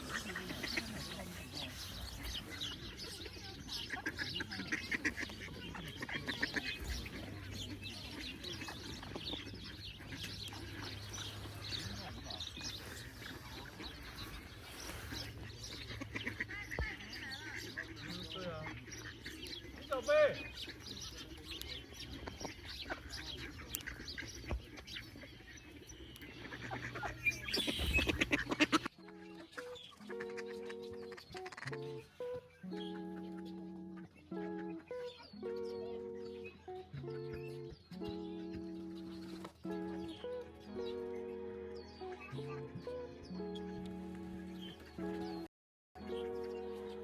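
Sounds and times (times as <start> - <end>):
waterfowl flock calling: 0.0 - 32.2.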